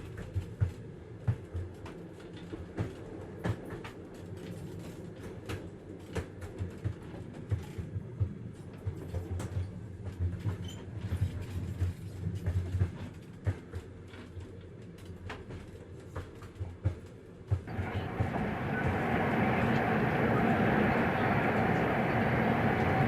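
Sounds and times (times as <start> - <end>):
train running rumble: 0.0 - 23.0
loud rushing noise: 17.7 - 23.0.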